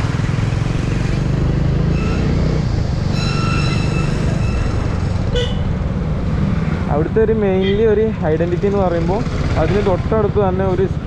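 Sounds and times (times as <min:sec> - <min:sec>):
motorcycle engine running: 0:00.0 - 0:03.0, 0:08.2 - 0:10.9
road and wind noise: 0:00.0 - 0:11.0
horn honking: 0:01.8 - 0:05.8.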